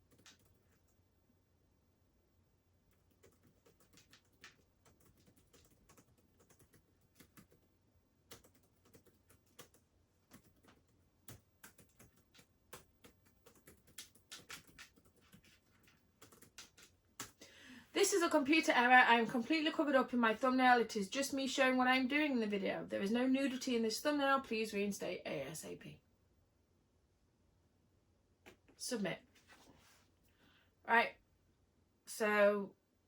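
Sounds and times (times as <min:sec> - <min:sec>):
faint keyboard typing: 0:00.0 - 0:01.0, 0:02.9 - 0:17.5.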